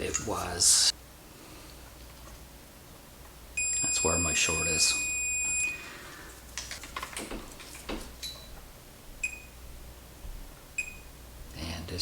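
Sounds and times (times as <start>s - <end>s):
multimeter continuity beep: 3.6s - 5.8s.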